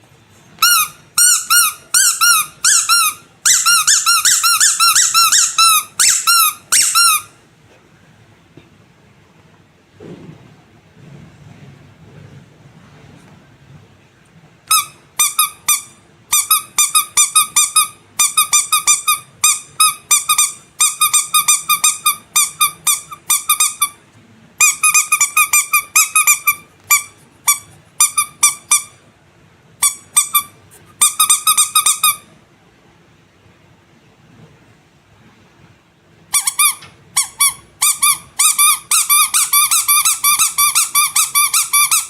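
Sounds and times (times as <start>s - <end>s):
squeaky rubber toy squeaks: 0.6s - 7.4s, 14.6s - 24.0s, 24.6s - 29.0s, 29.8s - 32.3s, 36.3s - 42.0s.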